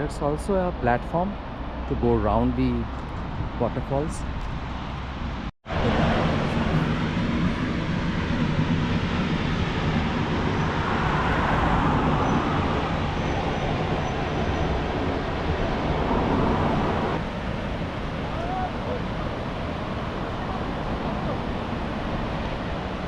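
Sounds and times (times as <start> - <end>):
waterfall rushing: 15.3 - 23.0.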